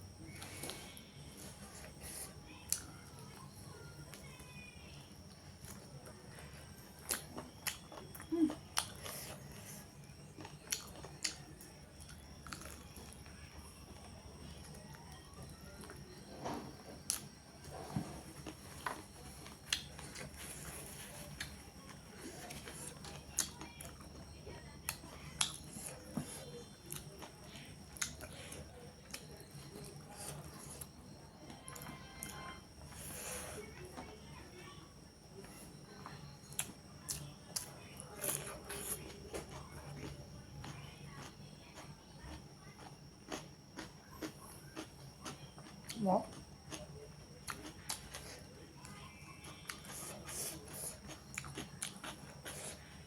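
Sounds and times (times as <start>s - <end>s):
chewing clicks and smacks: 7.0s - 9.2s, 10.4s - 13.2s, 18.4s - 20.4s, 24.8s - 26.0s, 26.8s - 28.4s, 36.5s - 52.8s.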